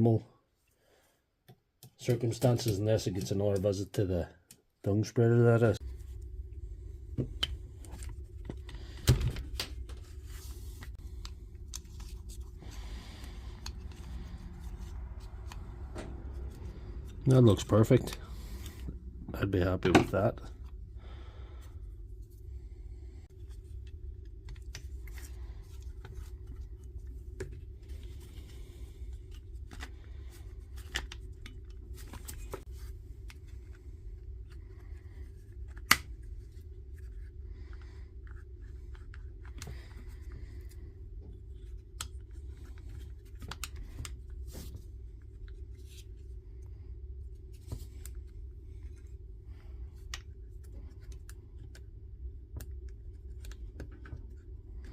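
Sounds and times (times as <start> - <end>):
steady low hum: 1.8 - 54.9
hands handling plastic parts: 7.1 - 20.8, 23.3 - 46.3.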